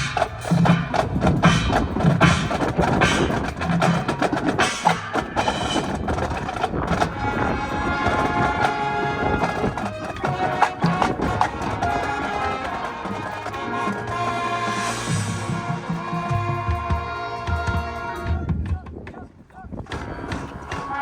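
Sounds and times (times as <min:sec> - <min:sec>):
marching band playing: 0:00.0 - 0:18.6
rapid percussion hits: 0:00.0 - 0:19.1.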